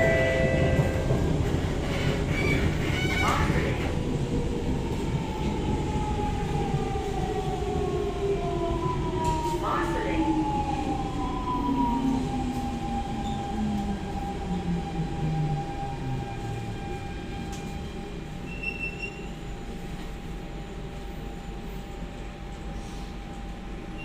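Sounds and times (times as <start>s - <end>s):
train car rumble: 0.0s - 10.6s.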